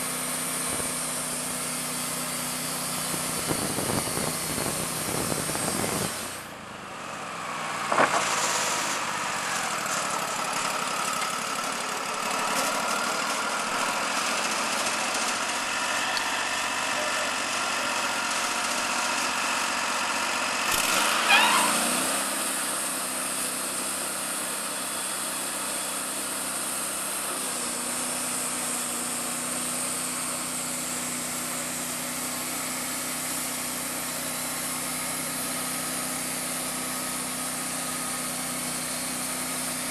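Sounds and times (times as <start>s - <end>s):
sawmill engine running: 0.0s - 39.9s
wavering high squeal: 21.2s - 22.0s.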